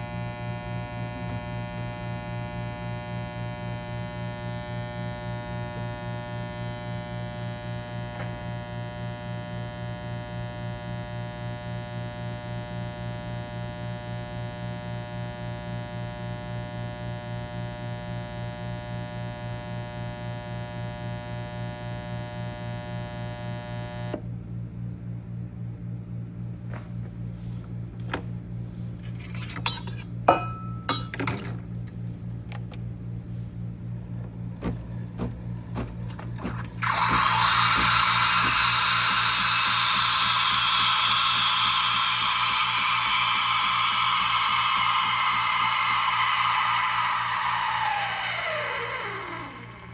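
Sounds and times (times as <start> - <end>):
espresso machine buzzing hum: 0.0 - 29.3, 30.0 - 49.9
clinks and knocks: 29.6 - 31.6.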